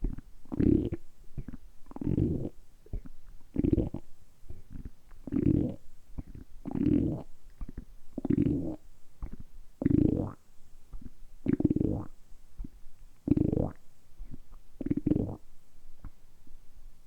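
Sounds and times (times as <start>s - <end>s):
stomach rumbling gurgles: 0.0s - 10.4s.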